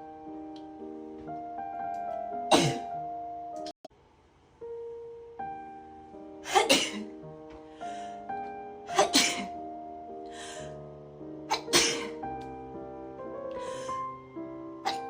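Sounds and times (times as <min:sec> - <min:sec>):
piano music: 0:00.0 - 0:03.8, 0:04.6 - 0:15.0
breathy sound: 0:07.6 - 0:08.3, 0:10.2 - 0:10.8, 0:13.5 - 0:14.1.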